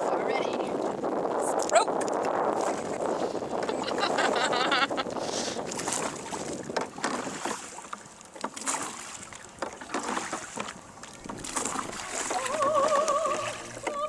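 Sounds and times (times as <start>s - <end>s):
wind on microphone: 0.0s - 8.2s, 8.8s - 14.0s
oars splashing in water: 1.6s - 4.2s, 4.9s - 14.0s
oars knocking in rowlocks: 5.7s - 14.0s.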